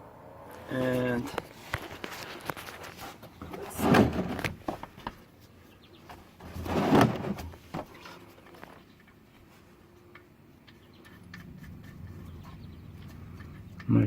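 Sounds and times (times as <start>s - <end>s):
tools scraping under car: 0.9s - 5.1s, 6.1s - 8.8s, 11.0s - 13.9s.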